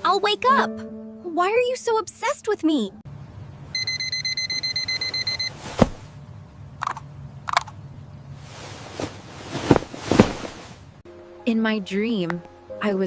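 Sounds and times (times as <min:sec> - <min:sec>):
alarm clock beeping: 0:03.8 - 0:05.6.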